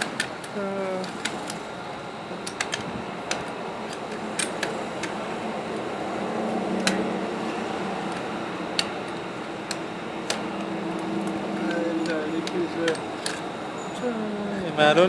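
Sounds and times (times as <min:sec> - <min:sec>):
steady background hum: 0:00.0 - 0:15.0
gun parts clicking: 0:02.4 - 0:05.2, 0:08.1 - 0:13.6.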